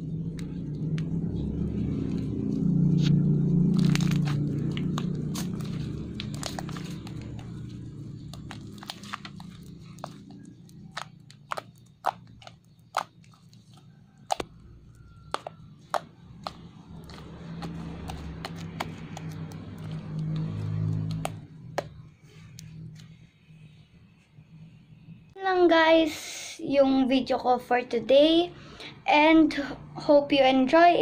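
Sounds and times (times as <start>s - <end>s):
sticky slime clicks: 14.3s - 14.5s.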